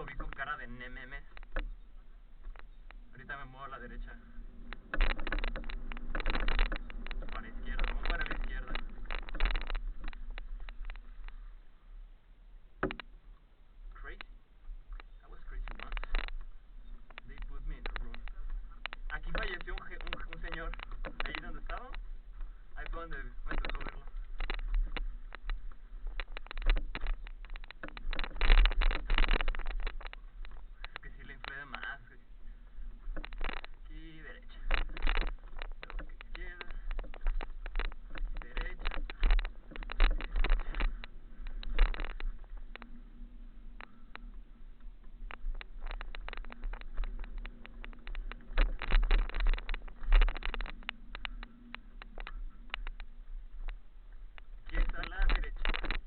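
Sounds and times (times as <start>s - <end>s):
man talking: 0.0s - 1.3s, 3.1s - 4.3s, 7.3s - 8.8s, 15.2s - 16.1s, 17.2s - 18.3s, 19.1s - 22.0s, 22.8s - 24.1s, 31.0s - 32.3s, 33.8s - 34.7s, 36.0s - 36.9s, 38.4s - 38.9s, 54.7s - 55.6s
bike knocking and rattling on rocks: 0.0s - 11.6s, 12.8s - 13.4s, 14.0s - 56.0s
wind rumble on microphone: 0.0s - 56.0s.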